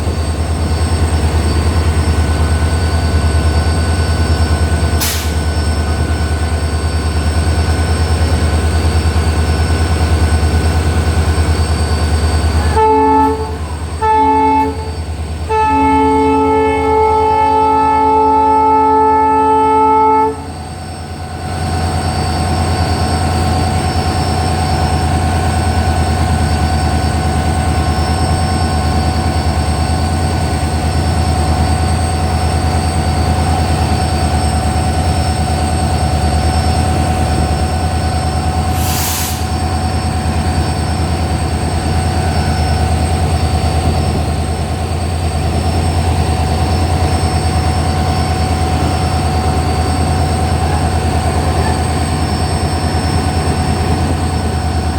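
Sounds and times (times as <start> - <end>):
diesel locomotive engine running: 0.0 - 54.9
short hiss: 5.0 - 5.5, 38.7 - 39.6.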